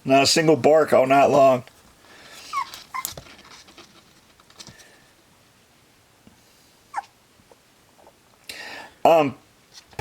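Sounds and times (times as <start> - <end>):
puppy whimpering: 2.5 - 3.2, 6.9 - 8.2.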